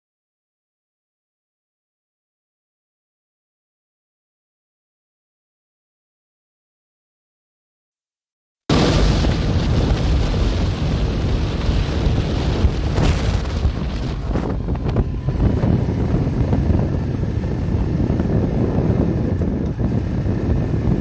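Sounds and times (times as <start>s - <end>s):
steady low rumble: 8.7s - 21.0s
wind buffeting microphone: 8.7s - 21.0s.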